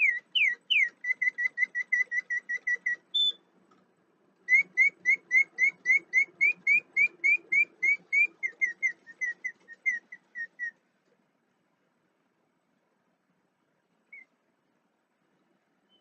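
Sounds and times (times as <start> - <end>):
mechanical bird whistling chirps: 0.0 - 3.4, 4.5 - 10.8, 14.1 - 14.3.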